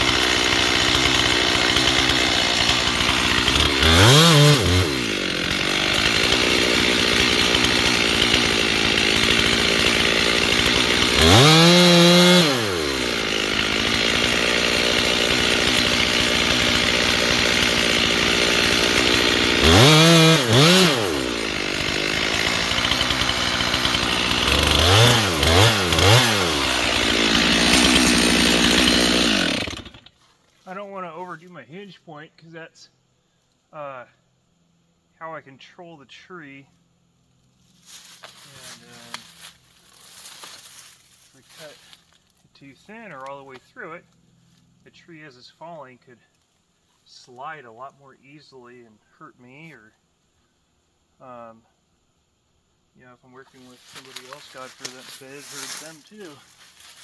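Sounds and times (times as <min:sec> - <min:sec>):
chainsaw cutting a tree: 0:00.0 - 0:30.2, 0:37.8 - 0:42.0, 0:53.5 - 0:57.0.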